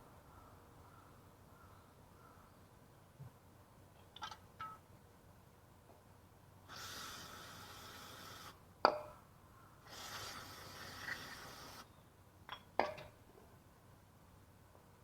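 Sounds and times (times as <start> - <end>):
steady hissing: 6.7 - 8.6, 9.8 - 11.9.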